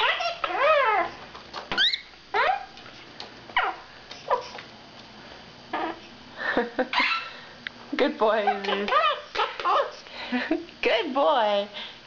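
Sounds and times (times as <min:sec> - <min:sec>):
parrot calls: 0:00.0 - 0:02.8, 0:03.6 - 0:04.6, 0:05.7 - 0:06.1, 0:06.9 - 0:07.4, 0:08.4 - 0:10.0.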